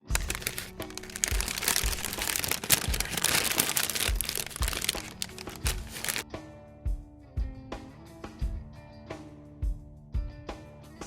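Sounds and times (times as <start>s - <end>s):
crackling crunching noise: 0.0s - 6.2s
music with thumping beat: 6.9s - 8.7s, 9.6s - 10.6s.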